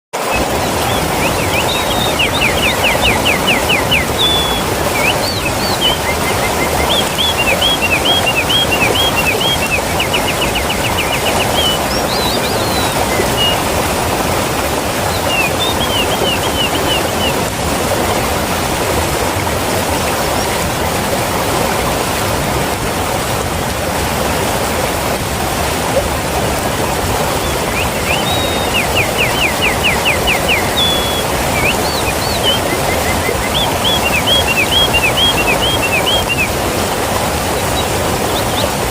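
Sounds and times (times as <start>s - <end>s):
waterfall rushing: 0.2s - 38.9s
bird chirping: 0.4s - 13.6s, 15.1s - 17.4s, 27.4s - 36.5s.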